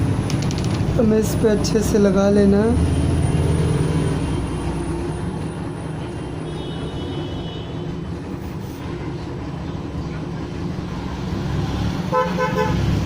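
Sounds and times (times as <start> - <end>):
road traffic noise: 0.0 - 13.0.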